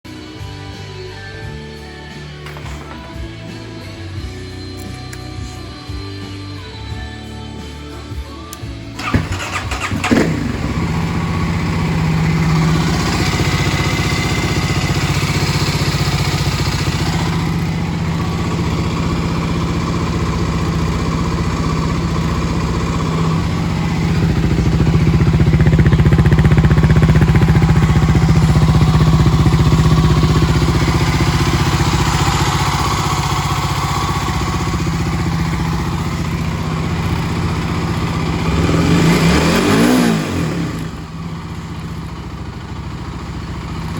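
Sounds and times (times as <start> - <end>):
dirt bike engine idling: 8.9 - 43.9.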